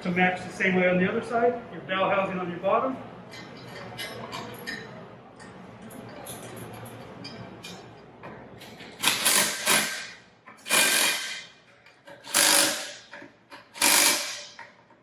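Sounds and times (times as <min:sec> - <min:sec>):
power driver running fasteners: 0:08.7 - 0:11.5, 0:12.1 - 0:14.8.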